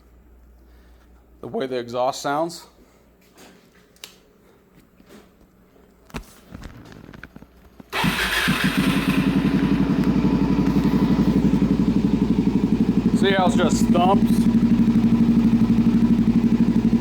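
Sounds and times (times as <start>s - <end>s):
motorcycle engine idling: 7.9s - 17.0s.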